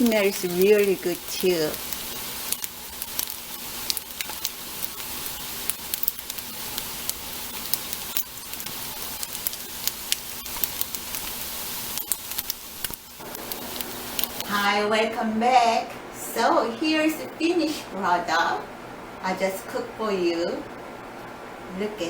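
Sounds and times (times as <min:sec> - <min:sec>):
oil crackling and popping: 0:00.0 - 0:14.7
food sizzling in oil: 0:00.0 - 0:14.8.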